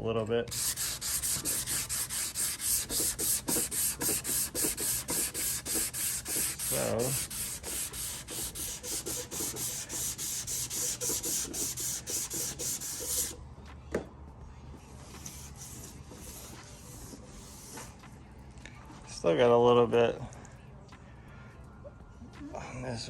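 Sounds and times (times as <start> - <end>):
wet sanding on plastic: 0.5 - 13.4.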